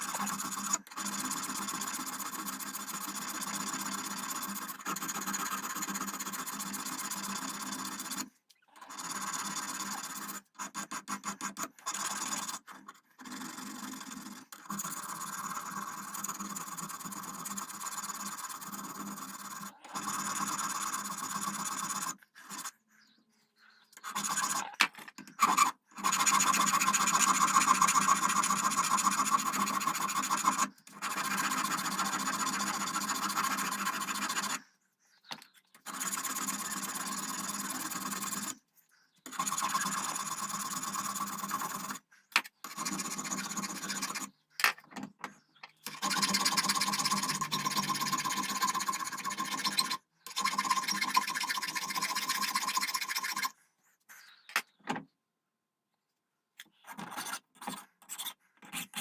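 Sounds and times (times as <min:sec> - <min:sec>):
abrasive tool scraping brass: 0:45.9 - 0:53.5.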